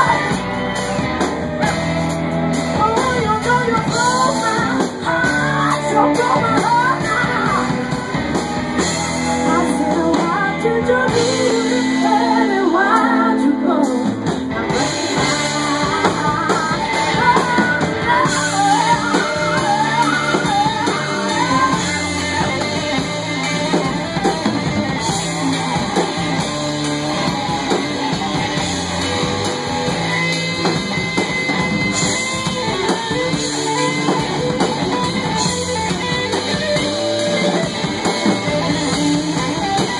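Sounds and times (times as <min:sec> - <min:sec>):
person singing: 0:00.0 - 0:00.8, 0:02.6 - 0:08.4, 0:09.2 - 0:26.5
drum kit: 0:00.0 - 0:39.9
electric guitar: 0:00.0 - 0:39.9
live rock band playing: 0:00.0 - 0:39.9.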